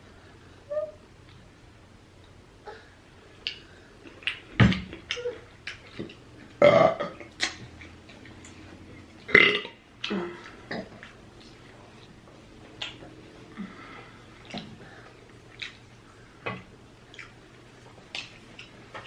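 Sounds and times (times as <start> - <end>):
mouth smacking and chewing: 3.4 - 6.6, 10.0 - 13.2, 14.0 - 16.3, 17.0 - 19.0
woman burping loudly: 6.6 - 7.3, 9.3 - 11.0.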